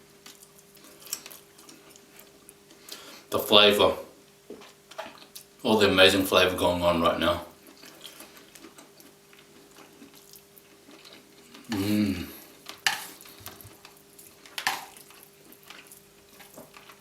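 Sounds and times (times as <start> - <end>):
crispy noodles being chewed: 0.1 - 3.0, 4.5 - 5.6, 7.5 - 17.0.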